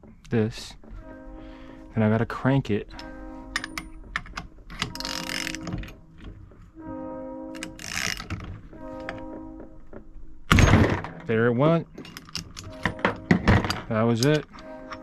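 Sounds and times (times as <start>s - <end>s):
hand tools clicking and ratcheting: 3.0s - 6.0s, 7.6s - 9.2s, 11.9s - 15.0s.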